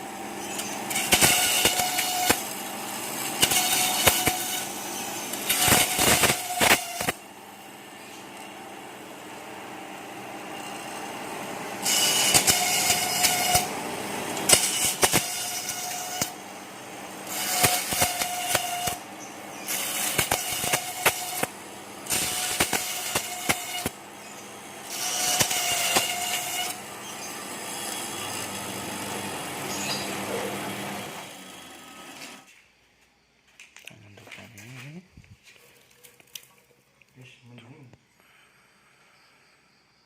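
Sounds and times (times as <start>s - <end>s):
motor humming: 0.0s - 32.5s.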